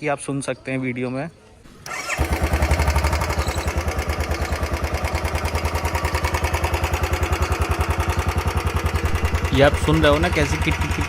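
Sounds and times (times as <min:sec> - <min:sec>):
engine ticking: 0:01.7 - 0:11.0
motorcycle engine idling: 0:01.7 - 0:11.0.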